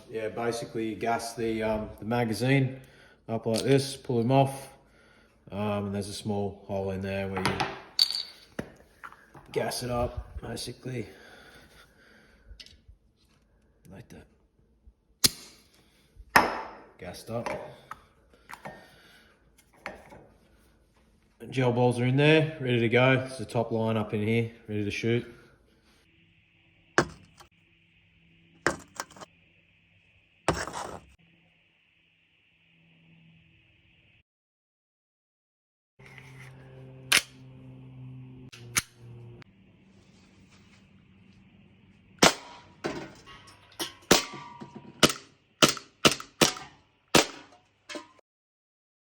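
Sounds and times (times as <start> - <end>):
toy pistol shots: 45.0 - 47.5.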